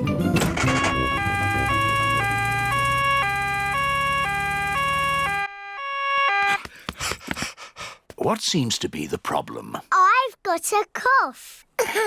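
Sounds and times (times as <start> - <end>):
two-tone emergency siren: 0.5 - 6.6.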